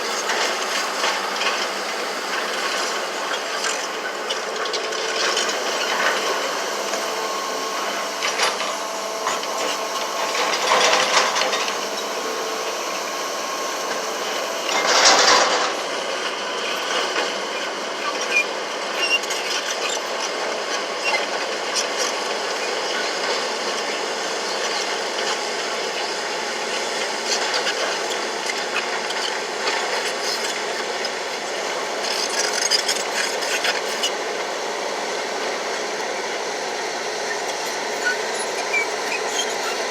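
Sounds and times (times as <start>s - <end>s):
heavy machinery running: 0.0s - 39.9s.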